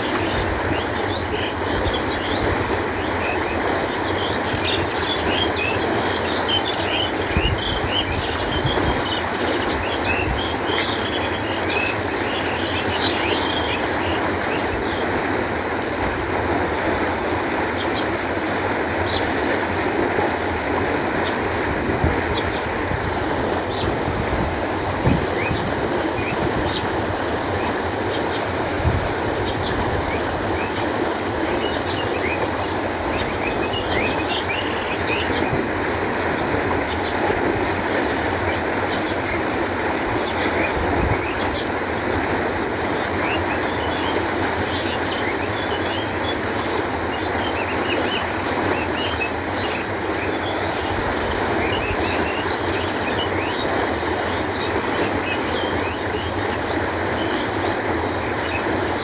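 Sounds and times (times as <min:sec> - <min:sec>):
water flowing: 0:00.0 - 0:59.0
small birds chirping: 0:25.1 - 0:28.7.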